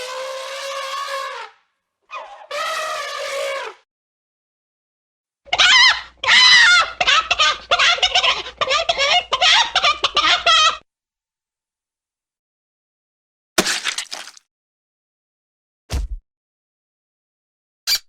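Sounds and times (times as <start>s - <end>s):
cartoon bird-like squawking: 5.5s - 10.7s.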